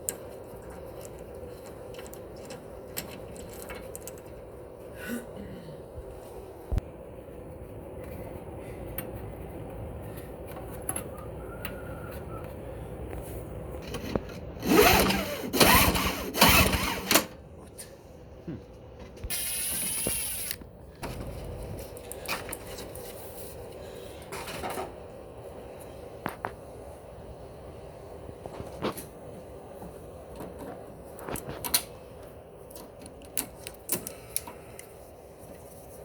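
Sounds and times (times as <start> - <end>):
hand power tool whirring: 14.6 - 17.3, 19.3 - 20.6
high hiss: 19.3 - 20.6.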